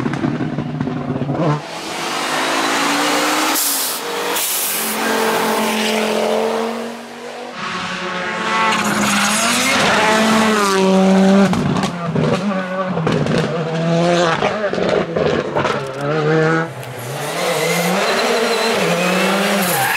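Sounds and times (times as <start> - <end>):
rally car engine at full throttle: 0.0 - 19.9.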